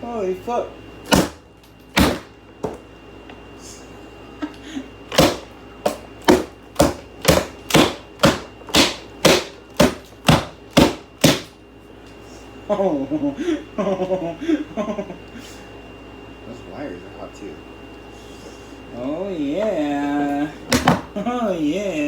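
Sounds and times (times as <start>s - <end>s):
sharp knocks: 5.1s - 11.5s, 20.7s - 21.1s.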